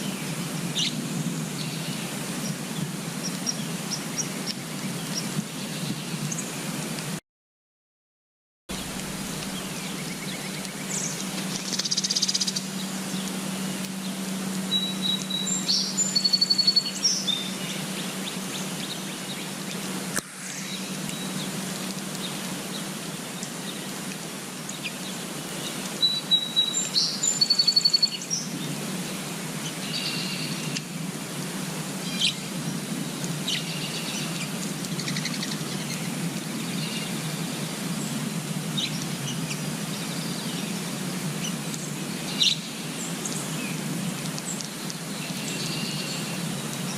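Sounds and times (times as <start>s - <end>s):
songbirds singing and chirping: 0.0s - 6.6s, 8.7s - 46.9s
low background hum: 8.7s - 46.9s.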